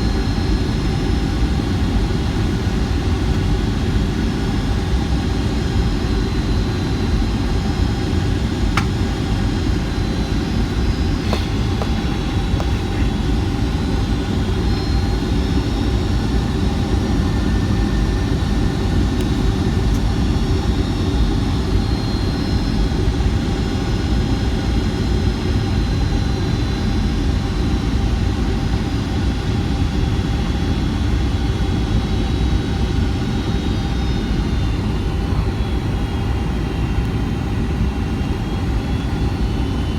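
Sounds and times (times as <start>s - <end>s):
jet cabin engine rumble: 0.0s - 21.0s.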